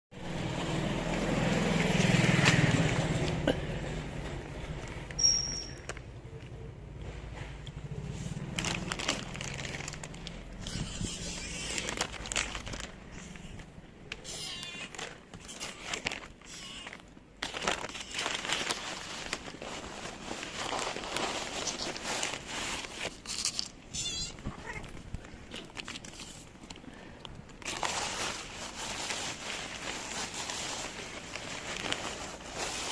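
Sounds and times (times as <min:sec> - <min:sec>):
plastic packaging crinkling: 0:08.4 - 0:32.9.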